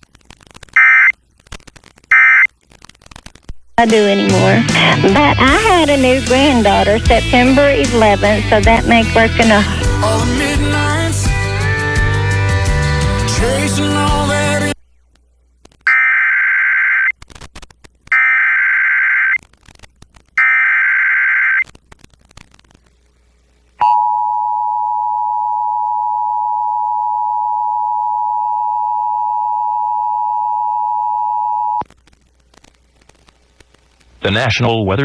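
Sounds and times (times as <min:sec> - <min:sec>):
digital data tone bursts: 0:00.8 - 0:01.2, 0:02.1 - 0:02.5, 0:15.9 - 0:17.1, 0:18.1 - 0:19.4, 0:20.4 - 0:21.7.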